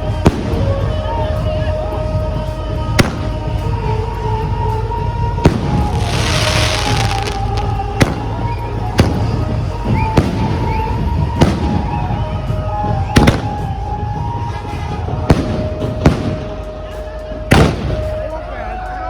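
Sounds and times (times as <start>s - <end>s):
music: 0.0s - 19.0s
fireworks bangs: 5.4s - 12.2s, 13.1s - 14.4s, 15.2s - 16.8s, 17.5s - 18.4s.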